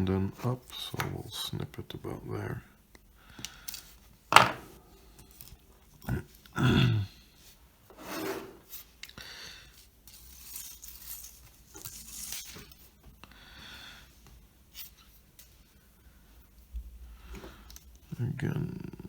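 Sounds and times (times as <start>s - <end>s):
wire rubbing and rustling: 9.8s - 13.1s.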